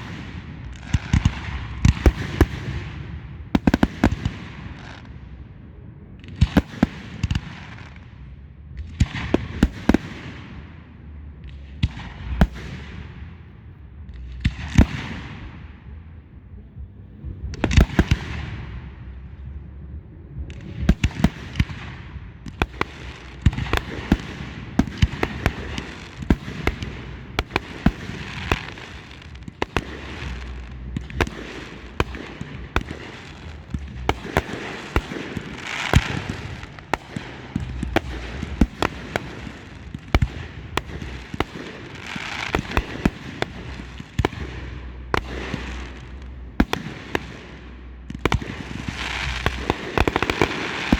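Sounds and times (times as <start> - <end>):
fireworks bangs: 0.0 - 5.2, 9.0 - 10.4, 17.2 - 19.2, 20.4 - 50.9
fireworks crackling: 0.0 - 5.2, 20.5 - 50.9.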